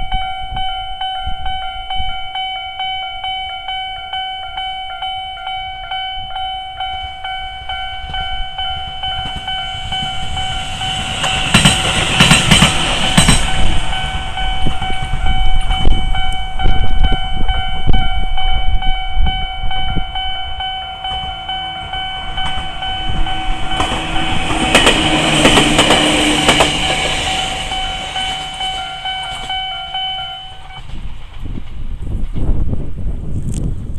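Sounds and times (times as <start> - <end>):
level crossing alarm ringing: 0.0 - 30.8
train wheels clattering: 8.0 - 16.1, 21.0 - 32.7.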